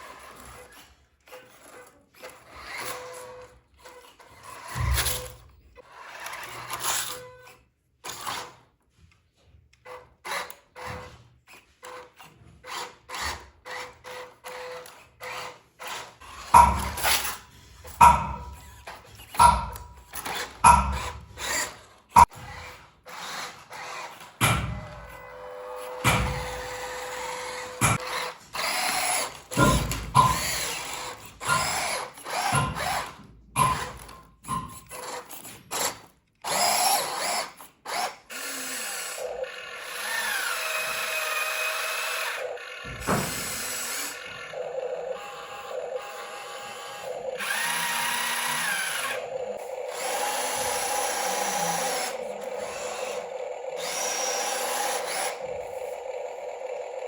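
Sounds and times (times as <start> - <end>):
small electric motors whining: 0.0 - 57.0.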